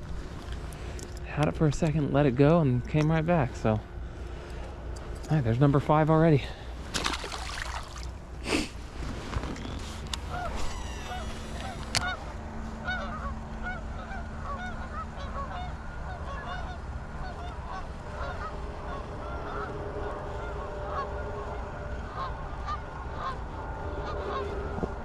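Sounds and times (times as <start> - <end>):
geese honking: 10.1 - 25.0.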